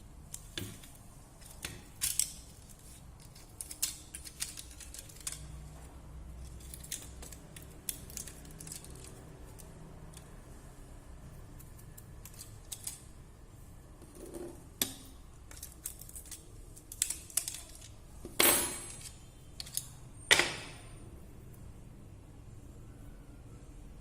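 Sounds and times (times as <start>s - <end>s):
hard objects clicking: 0.3s - 5.7s.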